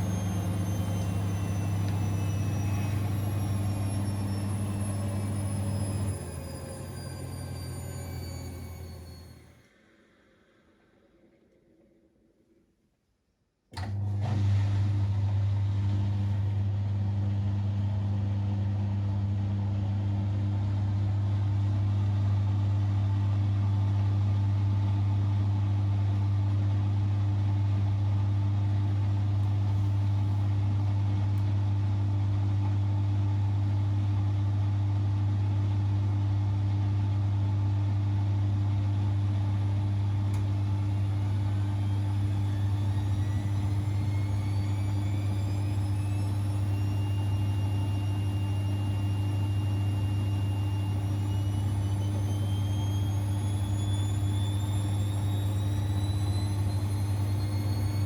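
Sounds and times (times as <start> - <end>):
washing machine spinning: 0.0 - 9.6, 28.2 - 32.6, 38.0 - 58.0.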